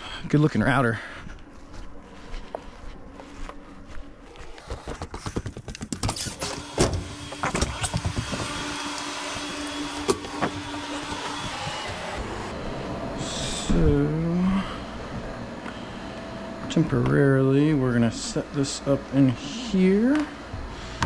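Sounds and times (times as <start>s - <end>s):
equipment clicking and knocking: 4.6s - 12.4s
steady hum: 6.4s - 21.0s.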